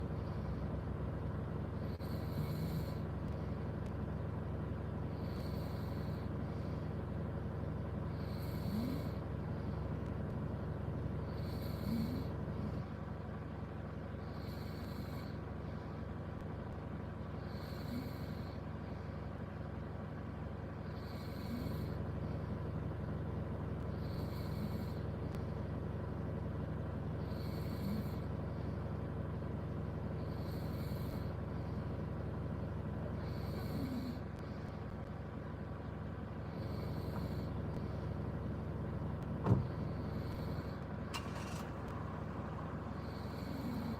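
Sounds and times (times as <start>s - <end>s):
steady low hum: 0.0s - 43.9s
person snoring: 1.8s - 3.0s, 5.1s - 6.3s, 8.1s - 9.2s, 11.3s - 12.8s, 14.3s - 15.4s, 17.5s - 18.6s, 20.9s - 22.0s, 24.0s - 25.0s, 27.2s - 28.2s, 33.2s - 34.2s, 43.0s - 43.9s.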